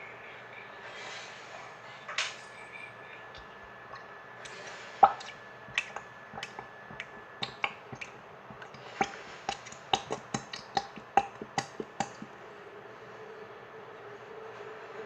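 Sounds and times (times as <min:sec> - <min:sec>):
slime clicking and popping: 0:05.0 - 0:12.3.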